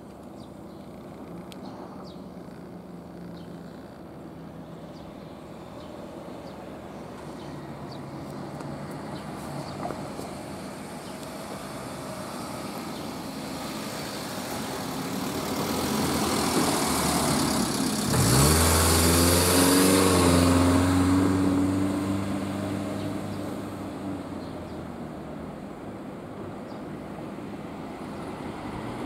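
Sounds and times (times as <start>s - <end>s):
vehicle passing by: 11.1s - 24.6s.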